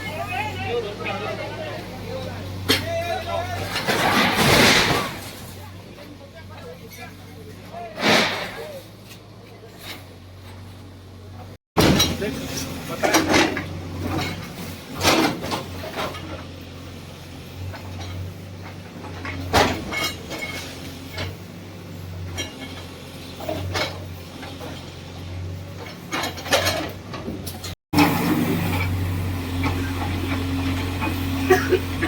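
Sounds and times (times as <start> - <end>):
bulldozer diesel engine running: 0.0 - 4.0, 8.8 - 32.0
metallic clanks and knocks: 25.7 - 27.8.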